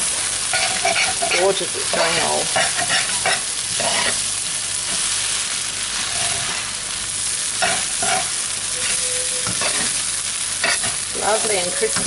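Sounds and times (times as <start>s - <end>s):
rice sizzling in a pan: 0.0s - 12.0s
utensil scraping a pan: 6.0s - 6.7s, 7.6s - 10.0s.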